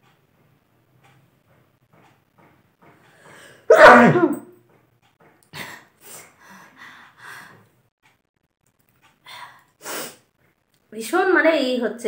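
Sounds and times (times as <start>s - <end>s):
short breaths: 3.1s - 3.7s
person sneezing: 3.7s - 4.4s.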